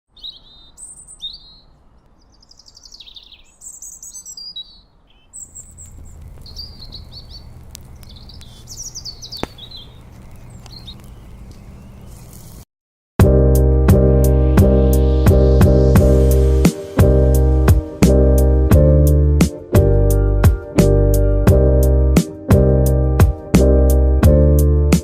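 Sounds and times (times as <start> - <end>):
songbirds chirping and singing: 0.1 - 12.5
steady low rumble: 14.0 - 21.7.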